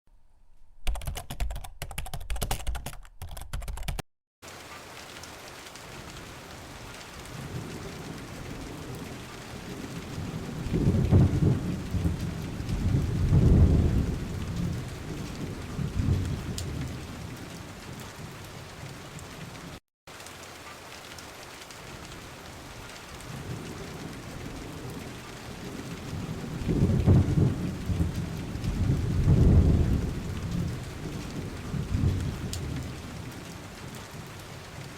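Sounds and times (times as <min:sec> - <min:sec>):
rapid clicking: 0:00.9 - 0:04.0
rain falling steadily: 0:04.4 - 0:34.9
thunder rumbling: 0:07.1 - 0:18.7, 0:23.2 - 0:34.3.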